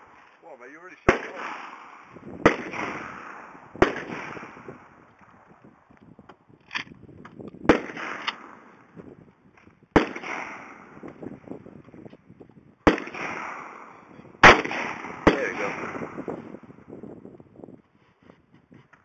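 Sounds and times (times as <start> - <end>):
gunshots with echo: 0.8 - 5.0, 7.7 - 8.8, 10.0 - 11.0, 12.8 - 16.6.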